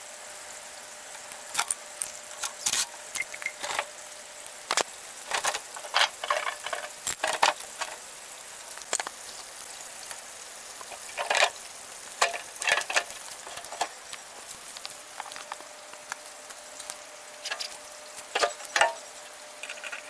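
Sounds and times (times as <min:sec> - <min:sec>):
small hard parts clicking and rattling: 0:01.5 - 0:04.0, 0:04.6 - 0:08.1, 0:08.7 - 0:09.5, 0:10.8 - 0:20.0.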